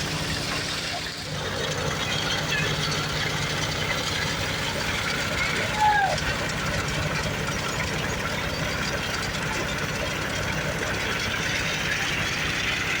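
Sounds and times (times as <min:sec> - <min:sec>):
diesel engine chugging at low revs: 0:00.0 - 0:13.0.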